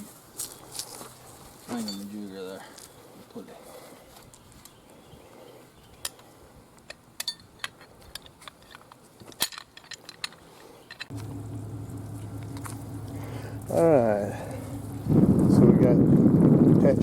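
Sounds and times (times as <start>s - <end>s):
steady low drone: 11.1s - 16.6s.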